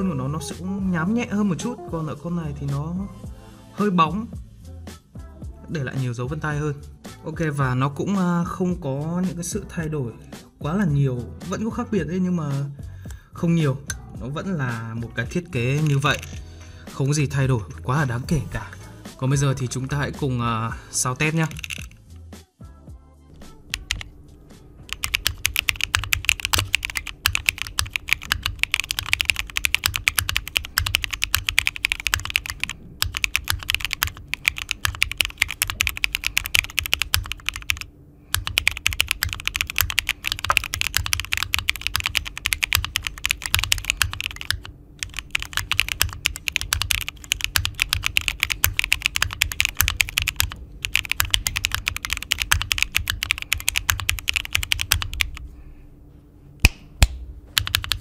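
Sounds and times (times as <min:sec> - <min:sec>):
mechanical keyboard typing: 0:15.7 - 0:16.4, 0:21.4 - 0:21.9, 0:23.7 - 0:24.1, 0:24.9 - 0:55.4, 0:57.6 - 0:58.0.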